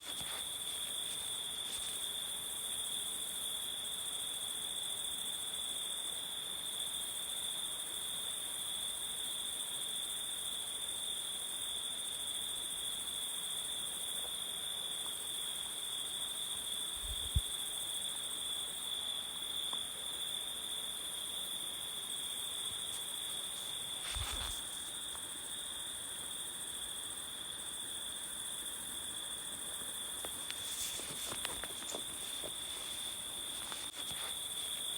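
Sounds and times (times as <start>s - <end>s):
insect chorus trilling: 10.0s - 34.9s.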